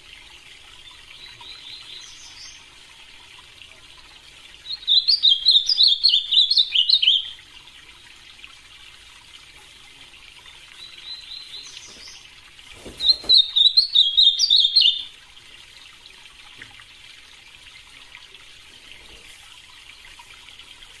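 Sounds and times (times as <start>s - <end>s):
faint steady hiss: 0.0s - 21.0s
bird singing warbled phrases: 0.8s - 2.7s, 4.6s - 7.4s, 10.4s - 12.3s, 13.0s - 15.1s.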